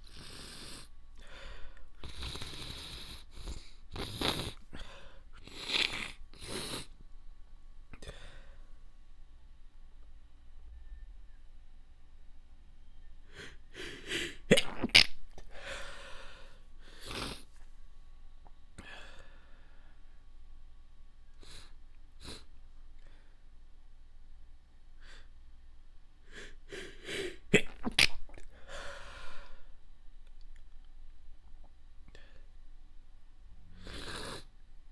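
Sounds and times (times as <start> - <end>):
noisy breath out: 0.0 - 7.0, 15.5 - 17.5, 18.8 - 20.0, 28.5 - 29.8
stifled wet sneezes: 14.4 - 15.2.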